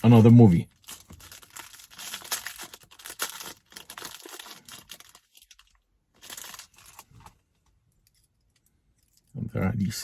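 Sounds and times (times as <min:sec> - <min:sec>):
plastic packaging crinkling: 0:00.0 - 0:07.5.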